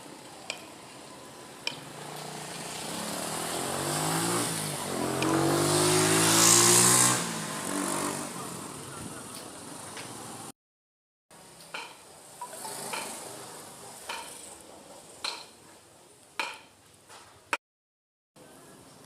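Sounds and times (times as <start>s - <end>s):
vehicle engine passing by: 1.8s - 10.5s.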